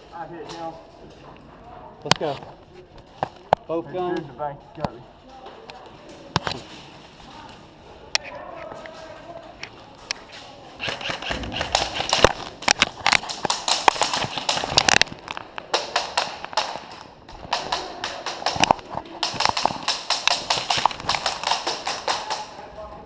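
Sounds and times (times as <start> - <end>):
camera jostling: 10.8 - 15.6.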